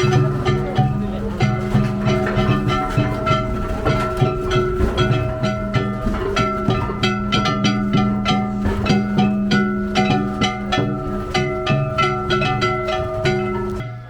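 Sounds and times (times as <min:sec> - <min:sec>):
drum beat: 0:00.0 - 0:14.0
plucked strings: 0:00.0 - 0:14.0.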